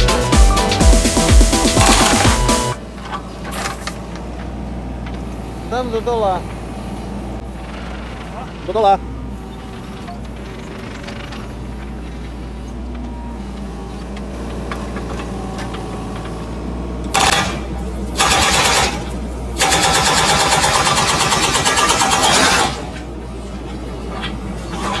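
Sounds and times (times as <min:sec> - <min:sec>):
hydraulic breaker hammering concrete: 0:00.0 - 0:03.3, 0:14.4 - 0:23.1
diesel engine running: 0:00.0 - 0:25.0.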